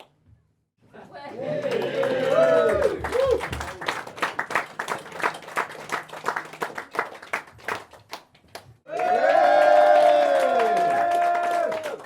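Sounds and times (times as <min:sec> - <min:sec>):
crowd cheering: 0:01.4 - 0:05.3, 0:08.9 - 0:12.0
audience clapping: 0:01.5 - 0:12.0.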